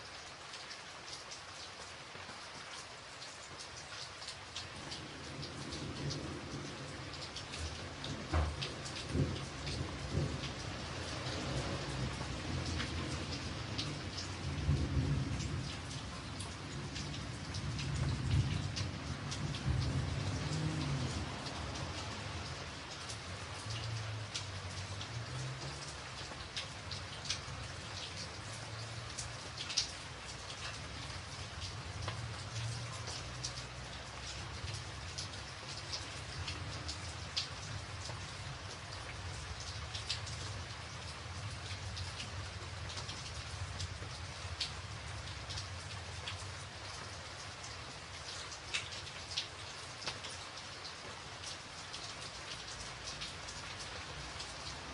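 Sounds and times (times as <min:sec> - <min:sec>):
sharp ticks of raindrops: 0:00.0 - 0:54.9
steady rain hiss: 0:00.0 - 0:54.9.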